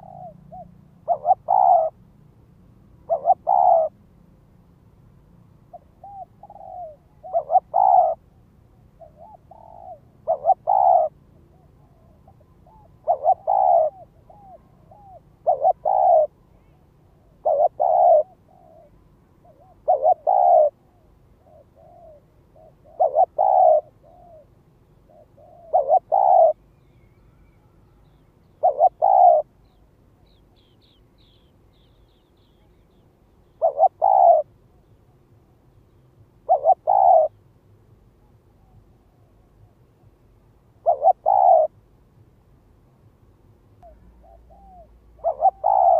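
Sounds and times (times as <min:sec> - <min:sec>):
dove cooing: 0:00.0 - 0:02.0, 0:03.0 - 0:04.0, 0:05.7 - 0:34.9, 0:36.4 - 0:37.4, 0:40.8 - 0:41.8, 0:43.8 - 0:45.9.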